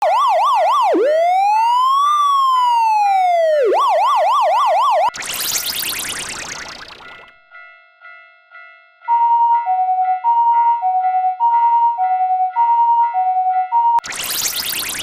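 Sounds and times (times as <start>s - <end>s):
electronic siren yelp and wail: 0.0s - 7.4s, 14.0s - 15.0s
loud electronic sound effect: 0.0s - 7.4s, 14.0s - 15.0s
faint railroad crossing bell: 7.5s - 13.7s.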